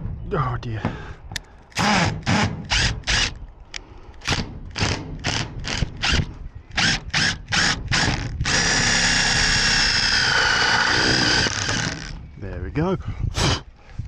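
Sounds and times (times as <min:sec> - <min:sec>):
power drill driving screw into metal: 0:04.3 - 0:12.2.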